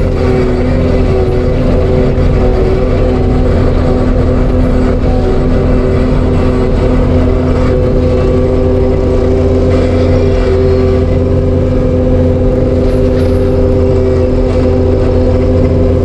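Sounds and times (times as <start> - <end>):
track loader engine drone: 0.0 - 16.0.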